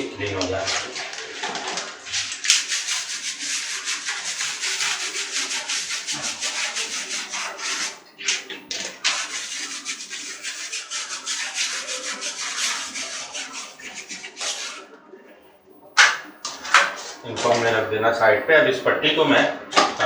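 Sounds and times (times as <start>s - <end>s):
brush scrubbing plastic parts: 0.2s - 14.9s.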